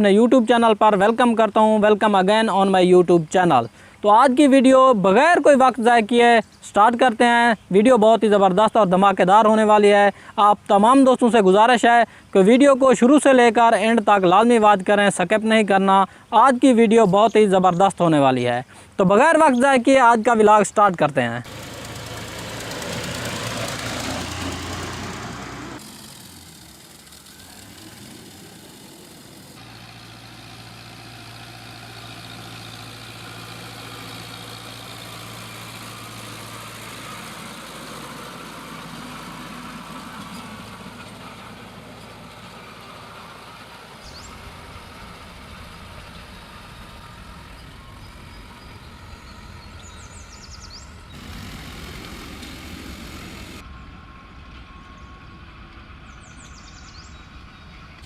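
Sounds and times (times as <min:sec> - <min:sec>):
tractor engine running under load: 0:21.4 - 0:58.0.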